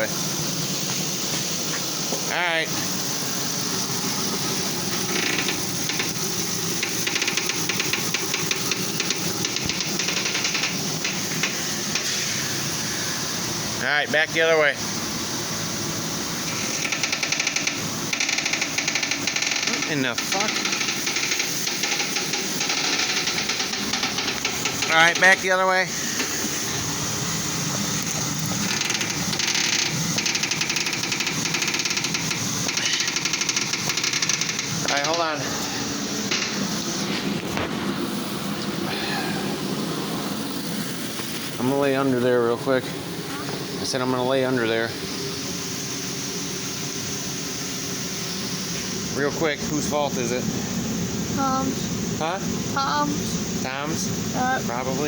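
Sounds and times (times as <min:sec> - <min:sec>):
steady hiss: 0:00.0 - 0:55.0
steering linkage clicking and knocking: 0:04.9 - 0:06.2, 0:06.8 - 0:12.1, 0:16.5 - 0:25.3, 0:28.6 - 0:35.2.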